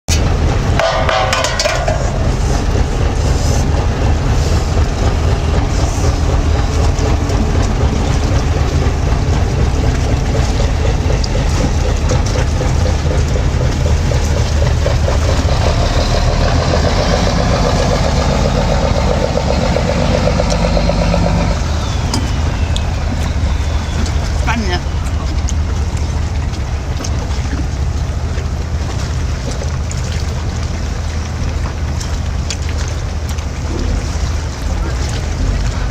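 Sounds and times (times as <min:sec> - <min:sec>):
boat engine humming: 0:00.1 - 0:35.9.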